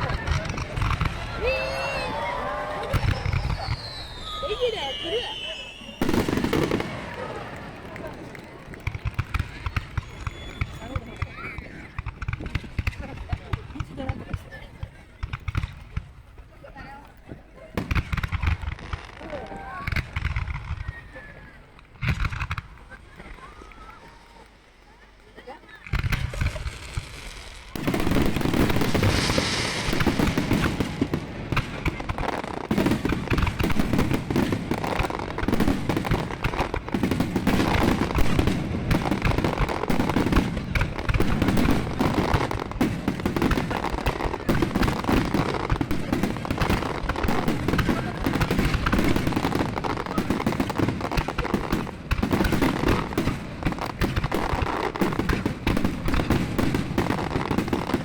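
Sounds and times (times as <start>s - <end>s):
fireworks crackling: 0.0s - 58.0s
fireworks shell bursts: 26.1s - 31.8s.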